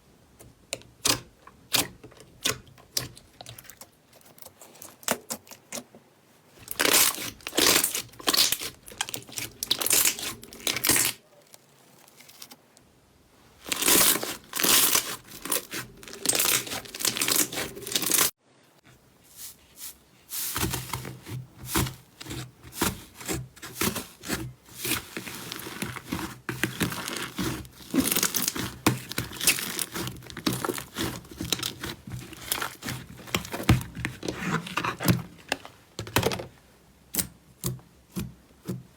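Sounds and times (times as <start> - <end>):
slime squeezed crackling and popping: 13.7 - 18.3, 26.8 - 31.8.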